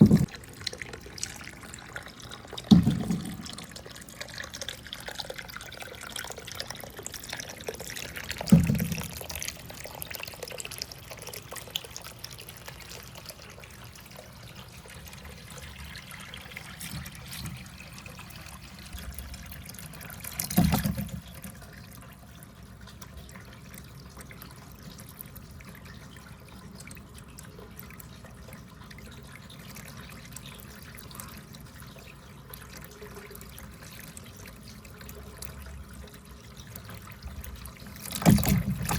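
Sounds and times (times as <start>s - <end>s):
loud knocks: 0.0s - 0.3s
water trickling through track: 0.0s - 38.9s.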